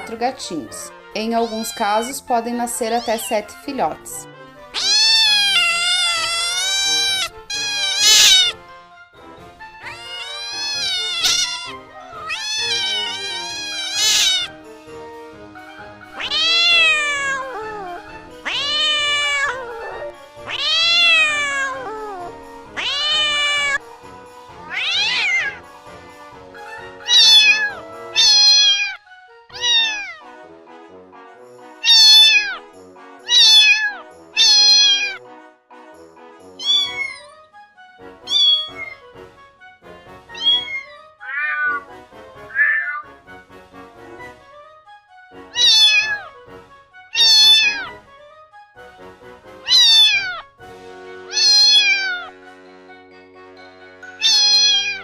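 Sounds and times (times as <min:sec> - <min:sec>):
cat meowing: 0:01.3 - 0:02.2, 0:02.8 - 0:03.6, 0:04.7 - 0:08.6, 0:09.8 - 0:14.6, 0:16.0 - 0:23.8, 0:24.6 - 0:25.6, 0:27.0 - 0:30.2, 0:31.8 - 0:32.6, 0:33.2 - 0:35.2, 0:36.6 - 0:37.4, 0:38.2 - 0:39.1, 0:40.3 - 0:41.9, 0:42.5 - 0:43.2, 0:45.5 - 0:46.4, 0:47.1 - 0:48.0, 0:49.6 - 0:50.5, 0:51.3 - 0:52.4, 0:54.0 - 0:55.0.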